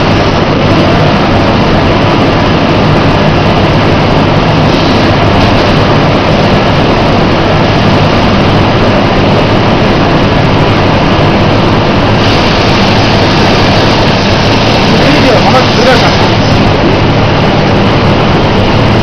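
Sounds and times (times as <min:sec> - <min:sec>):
low hum: 0:00.0 - 0:15.0, 0:16.1 - 0:19.0
packing machinery drone: 0:00.0 - 0:19.0.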